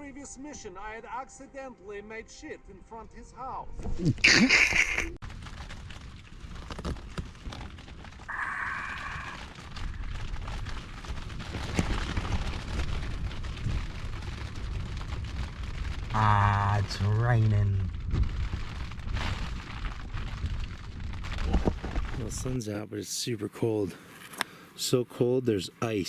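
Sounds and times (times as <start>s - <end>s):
rain pattering on tent: 4.5s - 22.8s.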